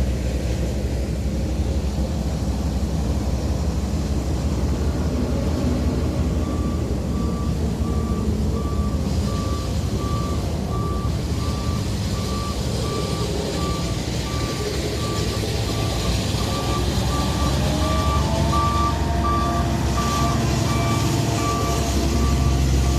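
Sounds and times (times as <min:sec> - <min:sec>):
vehicle engine running: 0:00.0 - 0:22.9
reversing alarm beeping: 0:06.3 - 0:22.9.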